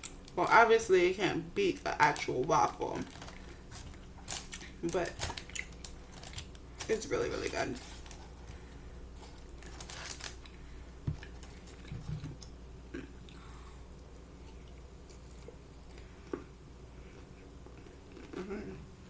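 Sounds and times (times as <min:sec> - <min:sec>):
person chewing crispy chicken: 0:03.0 - 0:06.9, 0:07.7 - 0:18.6.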